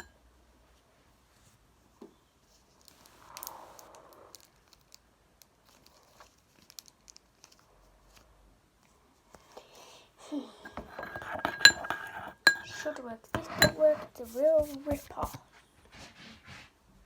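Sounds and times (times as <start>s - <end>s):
squishy slime rustle: 2.4s - 8.4s
small clicks and ticks: 2.7s - 8.2s.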